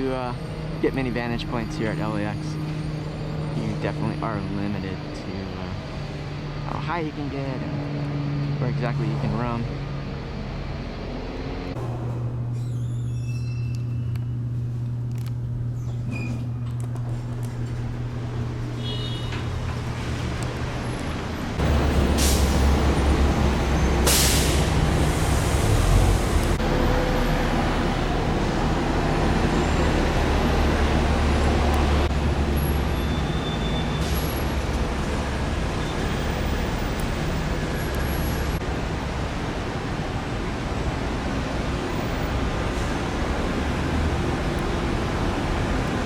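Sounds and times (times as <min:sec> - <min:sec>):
diesel engine rumbling: 0:00.0 - 0:46.0
traffic noise: 0:00.0 - 0:46.0
air brake hisses: 0:22.2 - 0:22.7, 0:24.0 - 0:25.8.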